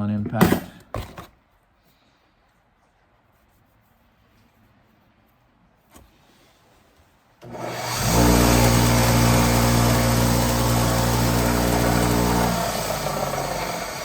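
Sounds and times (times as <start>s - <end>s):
motor running loudly: 7.4s - 14.0s.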